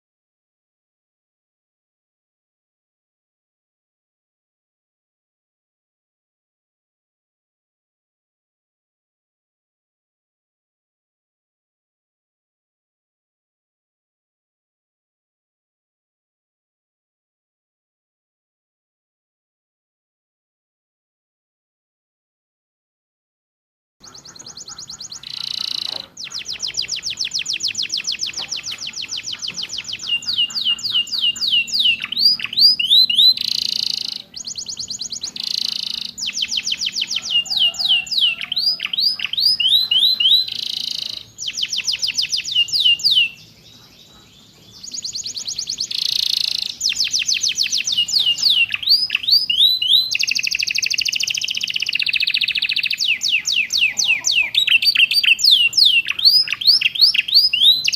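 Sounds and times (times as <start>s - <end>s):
canary singing fast trills: 24.0s - 57.9s.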